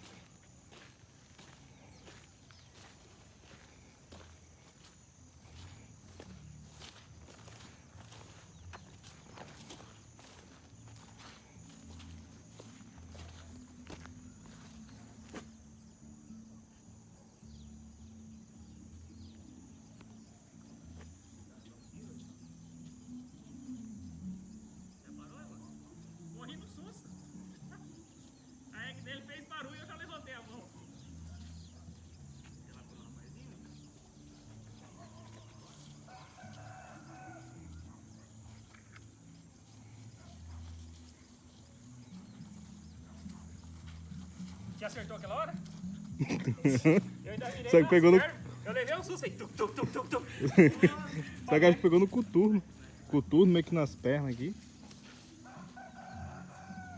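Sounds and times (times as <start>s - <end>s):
faint rooster crowing: 34.9s - 38.4s, 55.0s - 56.9s.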